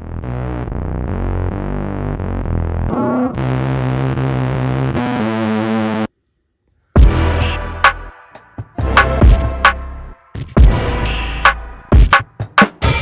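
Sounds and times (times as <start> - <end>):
synthesizer distorted chords: 7.0 - 12.0.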